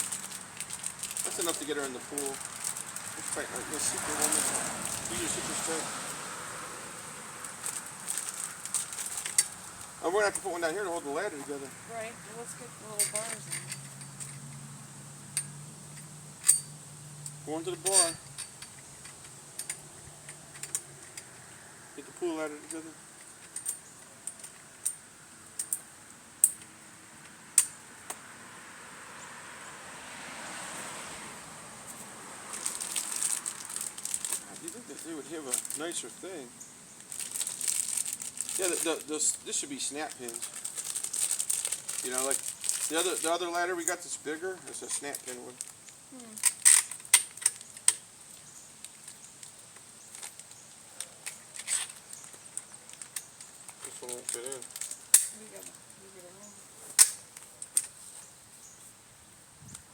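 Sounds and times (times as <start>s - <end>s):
parts clicking and knocking: 7.4s - 10.6s, 15.3s - 21.5s, 22.6s - 28.2s.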